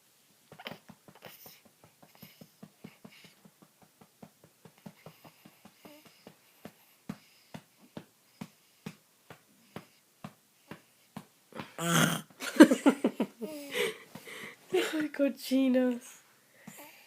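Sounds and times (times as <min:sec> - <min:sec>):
baby burping: 0:11.8 - 0:12.3
adult laughing: 0:12.4 - 0:14.1.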